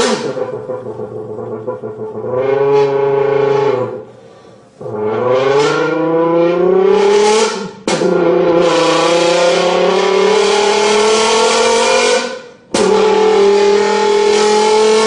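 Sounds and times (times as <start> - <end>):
buzzy horn-like bottle tone: 0.0 - 4.1, 4.7 - 15.0.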